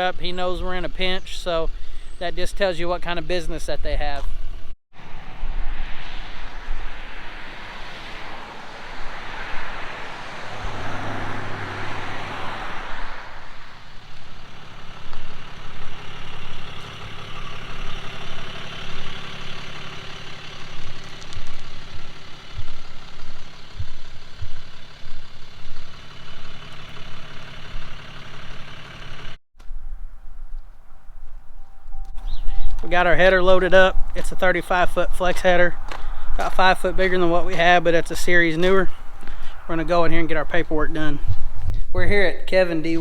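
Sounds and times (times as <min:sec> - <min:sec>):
heavy engine idling: 0:13.8 - 0:29.4.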